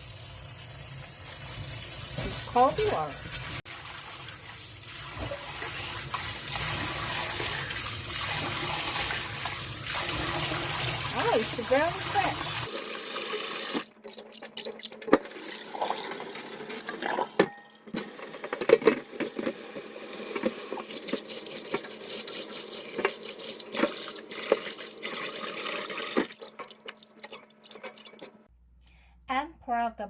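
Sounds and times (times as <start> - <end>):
tap water running into sink: 0.8 - 17.4, 19.3 - 28.4.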